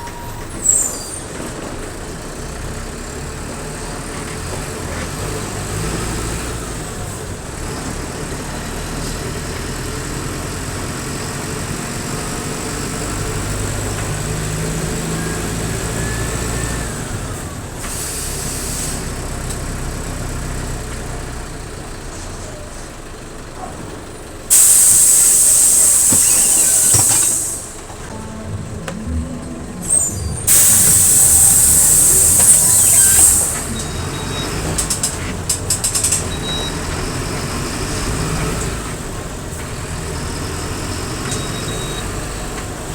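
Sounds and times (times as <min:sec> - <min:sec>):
bus diesel engine running: 0:00.0 - 0:42.9
air-brake hiss: 0:17.8 - 0:19.3, 0:24.5 - 0:28.1, 0:29.8 - 0:36.4
compressed air hiss: 0:24.5 - 0:27.9, 0:30.5 - 0:33.8
faint rising and falling whistle: 0:28.5 - 0:34.7.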